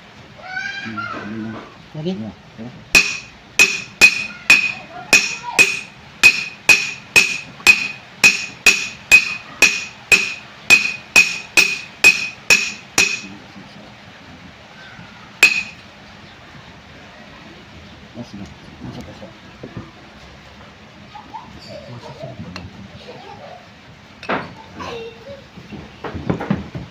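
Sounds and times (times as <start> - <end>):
hammer blows on metal: 2.9 - 13.4, 15.4 - 15.8.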